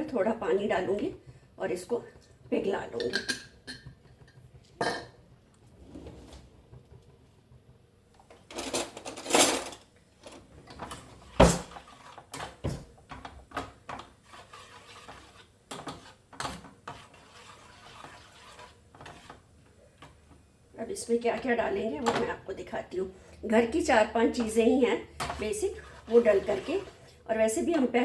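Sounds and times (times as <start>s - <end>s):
pots and utensils clinking: 3.0s - 5.2s, 8.5s - 9.9s.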